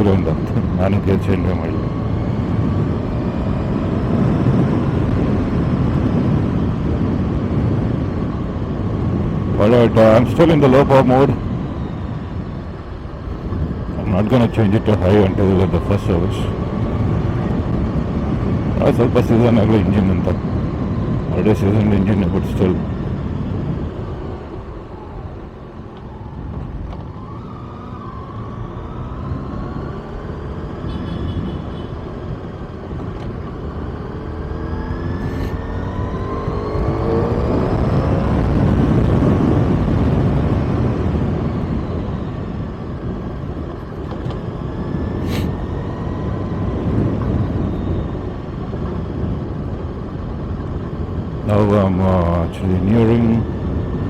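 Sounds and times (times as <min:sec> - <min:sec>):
wind rushing over microphone: 0:00.0 - 0:54.0
motorcycle engine accelerating: 0:27.0 - 0:51.4.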